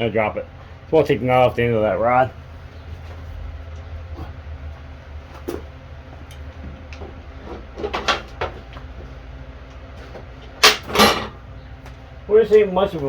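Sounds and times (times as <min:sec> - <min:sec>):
steady low hum: 0:00.0 - 0:13.0
loud metal clanks: 0:10.6 - 0:11.4.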